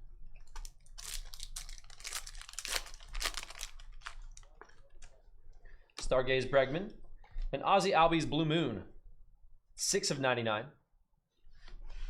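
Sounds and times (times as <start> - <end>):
card wrappers crinkling and tearing: 0.4 - 4.6.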